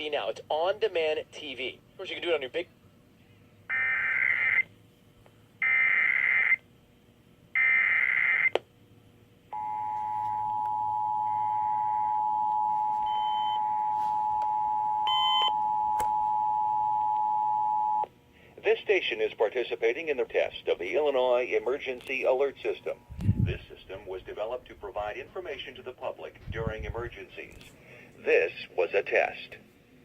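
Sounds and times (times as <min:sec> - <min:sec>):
two-tone attention signal: 0:09.6 - 0:18.0.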